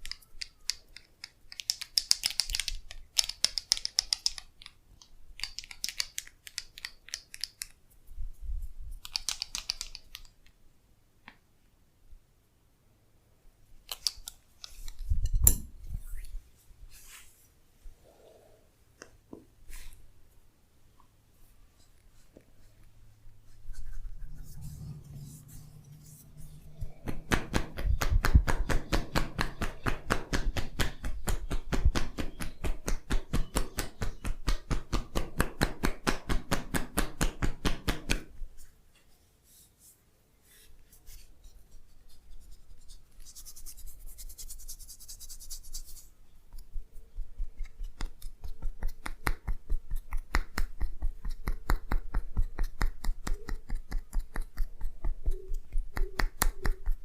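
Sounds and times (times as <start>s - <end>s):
hands tapping on body: 26.8s - 38.3s, 47.4s - 57.0s.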